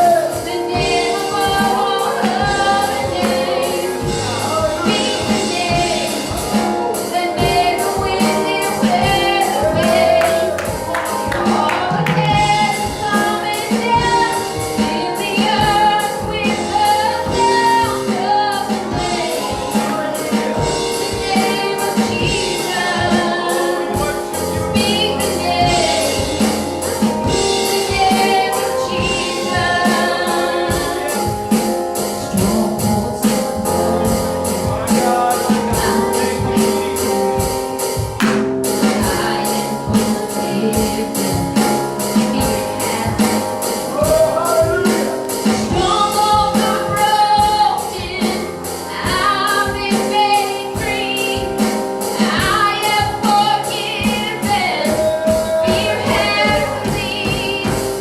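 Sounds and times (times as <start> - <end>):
gospel singers with band: 0.0 - 58.0
tambourine beat: 0.0 - 58.0.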